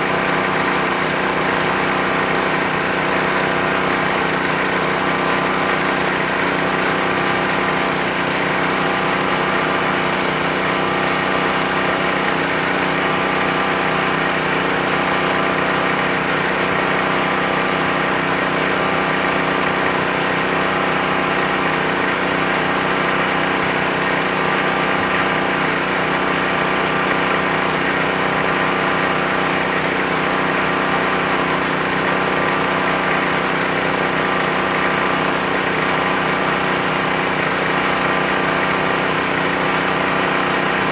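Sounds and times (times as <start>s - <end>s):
drilling machine engine running: 0.0s - 40.9s.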